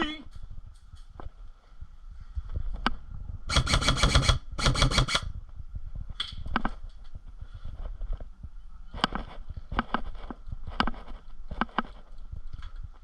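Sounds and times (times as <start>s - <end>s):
airsoft gun full-auto bursts: 3.5s - 5.3s.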